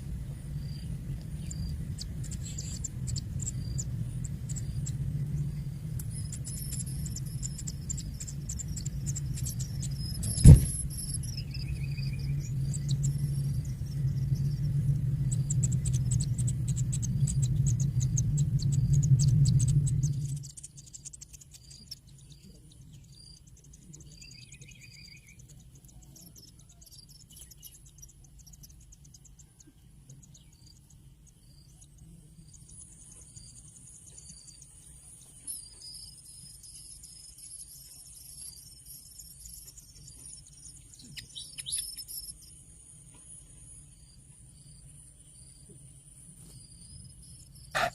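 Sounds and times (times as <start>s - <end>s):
low hum: 0.0s - 26.2s
bird-like chirps: 0.5s - 47.9s
insect trilling: 1.4s - 25.5s, 46.6s - 47.9s.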